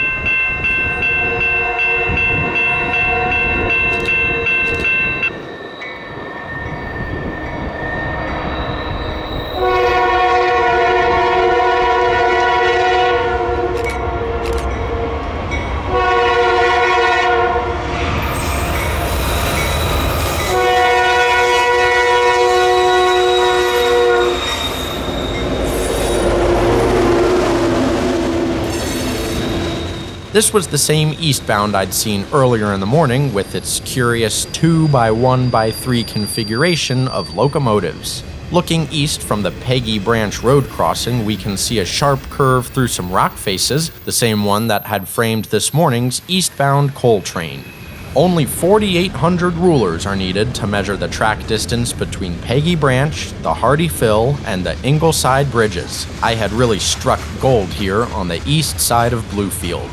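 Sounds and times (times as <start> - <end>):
pulsing ringing tone: 0.0 - 10.0
locomotive air horn blasts: 1.0 - 5.5, 9.5 - 15.3, 15.9 - 31.4
diesel engines rumbling: 18.2 - 59.9.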